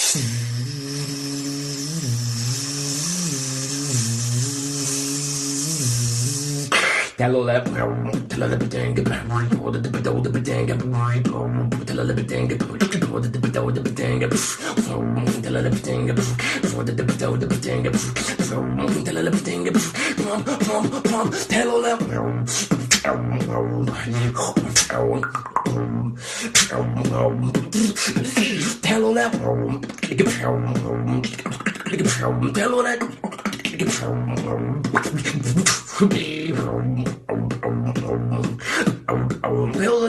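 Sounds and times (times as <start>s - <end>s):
low vocal hum: 0.0s - 6.8s, 7.7s - 40.0s
beatboxed snare hits: 0.0s - 40.0s
mouth clicks: 24.4s - 28.5s.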